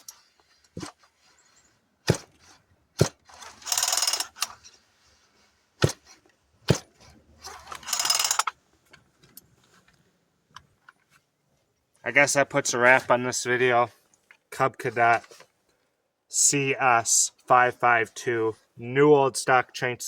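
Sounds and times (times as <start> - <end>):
short ratcheting whir: 3.0 - 4.6, 7.4 - 8.5
chainsaw mechanical clicks: 3.1 - 4.7, 5.8 - 9.5.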